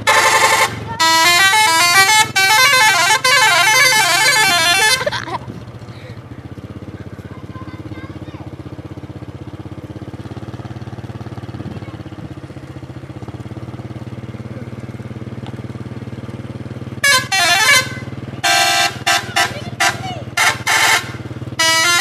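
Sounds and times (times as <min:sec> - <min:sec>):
musical bus horn: 0:00.0 - 0:05.4, 0:16.8 - 0:22.0
bus engine idling: 0:00.0 - 0:22.0.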